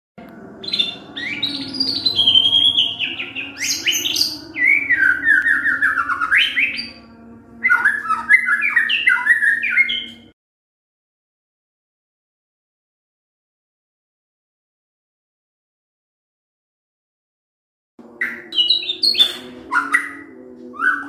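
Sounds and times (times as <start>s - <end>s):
bird singing whistled notes: 0.6s - 10.3s, 18.2s - 21.0s.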